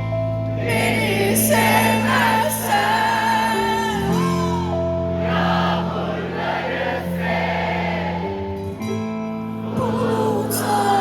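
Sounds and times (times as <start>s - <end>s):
many voices singing: 0.6s - 8.8s, 9.6s - 11.0s.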